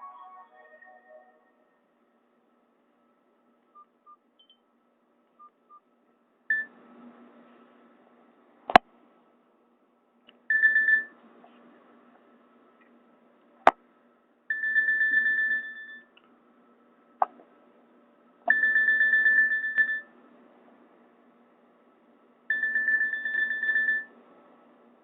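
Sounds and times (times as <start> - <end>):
trilling phone ringtone: 10.5 - 11.1, 14.5 - 16.1, 18.5 - 20.1, 22.5 - 24.2.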